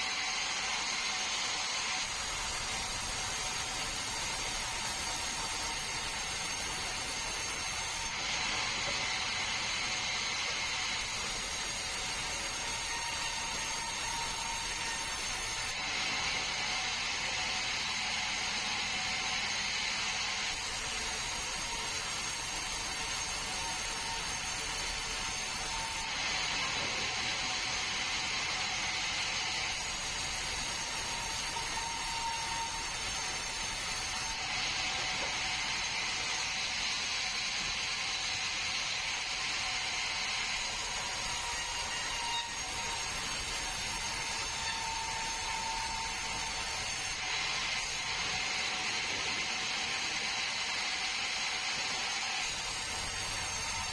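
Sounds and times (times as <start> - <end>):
sawmill saw cutting log: 0.0 - 53.9.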